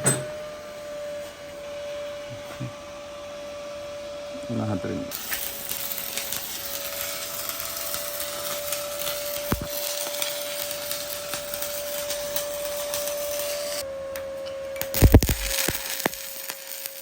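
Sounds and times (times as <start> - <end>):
welding arc crackling and hissing: 4.8 - 13.8, 14.8 - 17.0
steady whine: 14.8 - 17.0.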